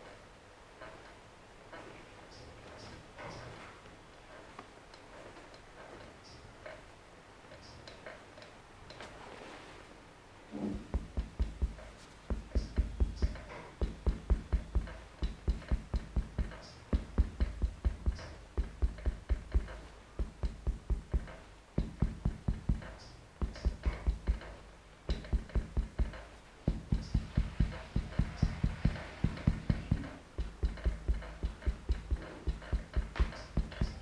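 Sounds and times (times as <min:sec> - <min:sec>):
mallet tapping on body: 0:10.7 - 0:34.0.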